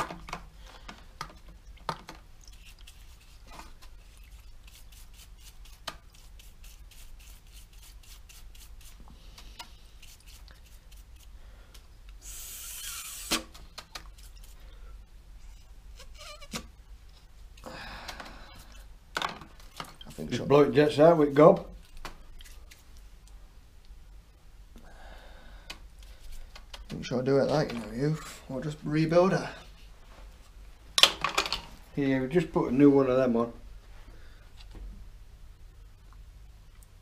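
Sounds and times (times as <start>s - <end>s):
aerosol spray hiss: 12.2s - 13.5s.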